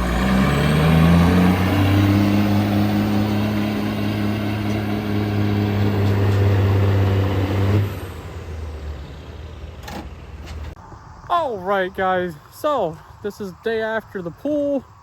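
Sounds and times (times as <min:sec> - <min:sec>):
truck engine revving high: 0:00.0 - 0:10.4.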